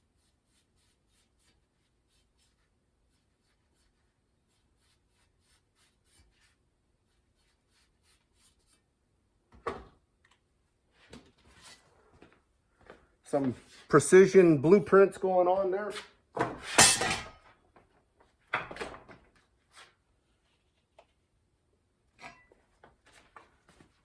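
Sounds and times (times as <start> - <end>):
pencil scratching: 0.2 - 8.8.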